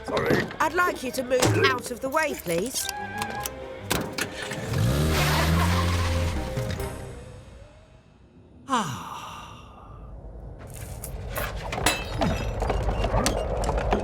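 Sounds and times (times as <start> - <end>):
cartoon voice sighing: 8.6 - 10.0
clatter of clicks and noise: 11.7 - 14.0.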